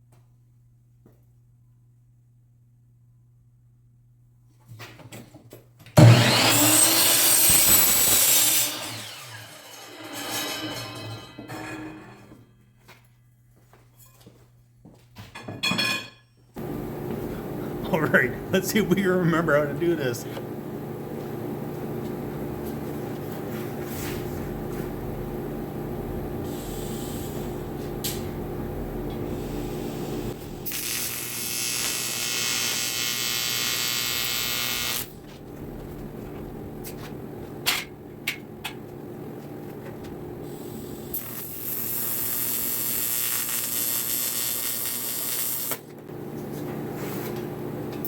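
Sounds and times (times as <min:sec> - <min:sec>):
welding machine humming: 0:06.0 - 0:11.1, 0:16.6 - 0:48.0
welding arc hissing and buzzing: 0:06.2 - 0:09.1, 0:16.6 - 0:23.2, 0:24.4 - 0:35.2, 0:40.4 - 0:45.9.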